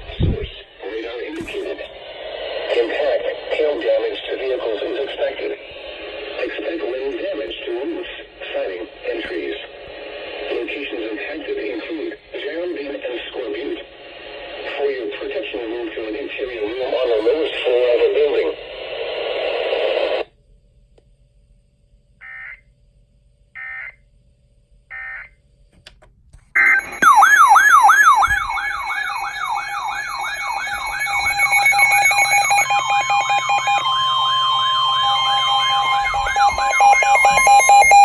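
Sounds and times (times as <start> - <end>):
data chirps: 26.6 - 38.0
steady tone: 26.6 - 38.0
warbling alert alarm: 26.6 - 38.0.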